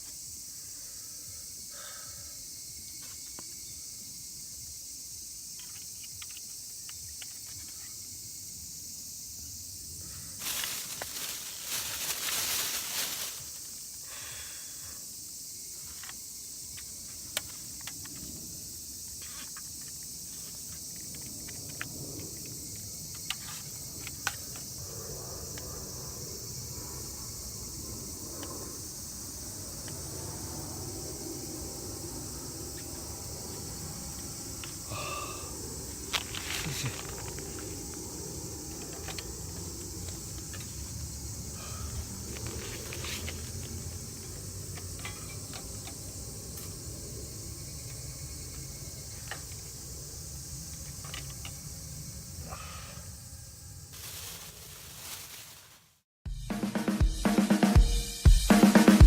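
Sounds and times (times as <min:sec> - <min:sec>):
high-pitched insect chorus: 0:00.0 - 0:56.0
loud rustling: 0:10.4 - 0:13.9, 0:53.9 - 0:56.0.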